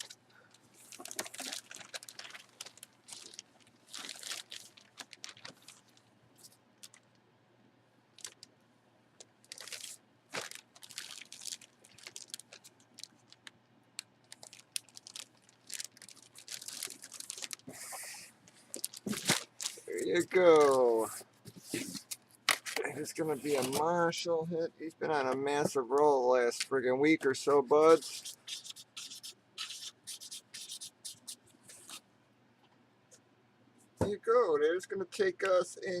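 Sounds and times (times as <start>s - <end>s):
packaging crinkling and rustling: 0.0s - 7.1s, 8.2s - 8.5s, 9.4s - 24.0s.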